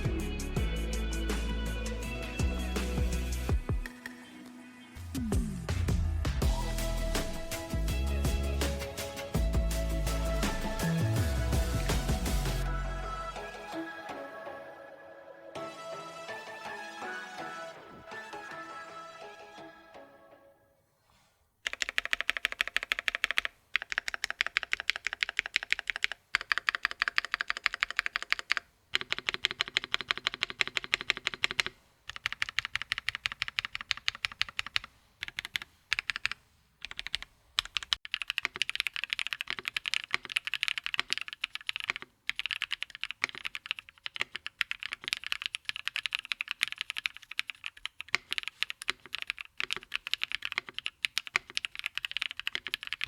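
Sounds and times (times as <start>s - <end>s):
mechanical keyboard typing: 21.6s - 53.0s.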